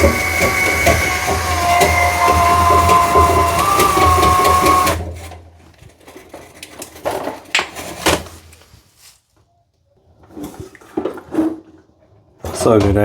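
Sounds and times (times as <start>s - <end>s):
drill whining: 0.0s - 5.3s
rods knocking and clattering: 0.0s - 8.2s.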